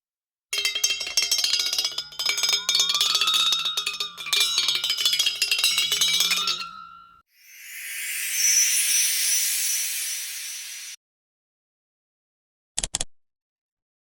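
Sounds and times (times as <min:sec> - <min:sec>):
metallic clinking and ticking: 0:00.6 - 0:07.2
bell-like ringing tones: 0:00.6 - 0:11.0.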